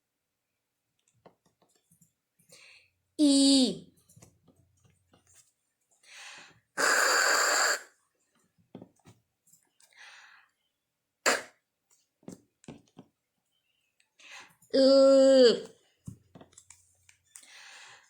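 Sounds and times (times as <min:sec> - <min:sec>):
woman making throaty hiss: 0:06.8 - 0:08.0, 0:11.3 - 0:11.5
woman making sharp k sound: 0:11.3 - 0:11.5.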